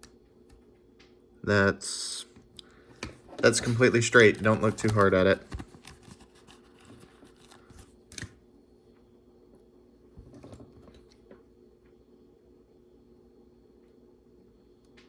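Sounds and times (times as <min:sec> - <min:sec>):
light rustling of sticker sheet: 0:03.0 - 0:08.4.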